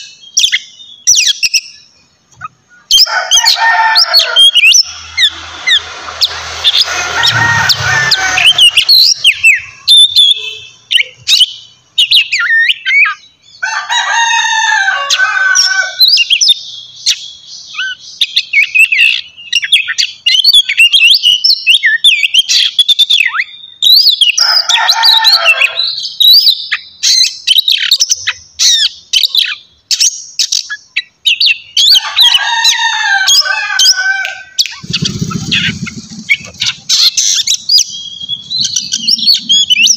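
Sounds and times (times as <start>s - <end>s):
bird harsh chattering: 2.3s - 13.2s, 34.3s - 39.9s
bird singing whistles: 34.6s - 39.9s.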